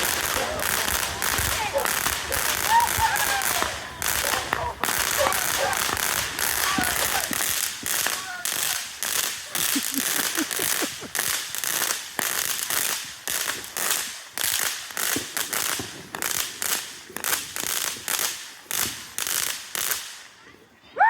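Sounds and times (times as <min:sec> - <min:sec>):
fireworks popping: 0:00.0 - 0:20.4.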